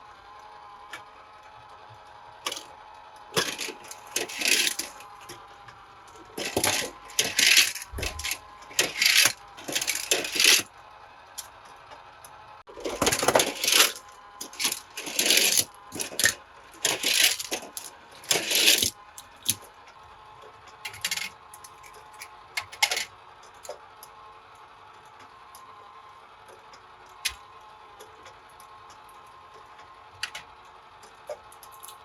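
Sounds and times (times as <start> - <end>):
toy cars clinking together: 2.5 - 2.7, 3.4 - 5.3, 6.4 - 10.7, 12.8 - 19.6, 20.9 - 23.7.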